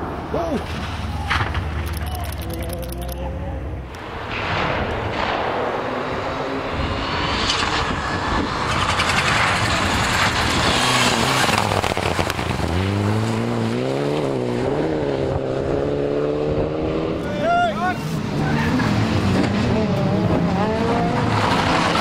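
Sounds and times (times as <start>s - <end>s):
rally car engine revving: 3.8s - 17.4s, 18.0s - 22.0s
tyres on gravel rushing: 7.4s - 13.5s.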